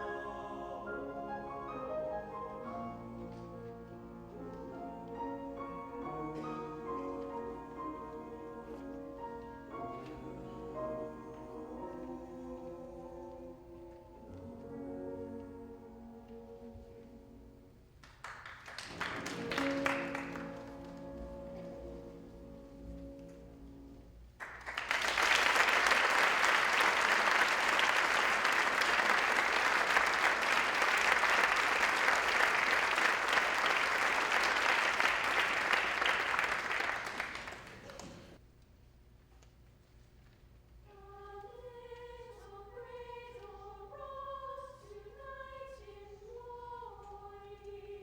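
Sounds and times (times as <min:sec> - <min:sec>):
audience applause: 0:18.2 - 0:20.8, 0:24.4 - 0:38.4.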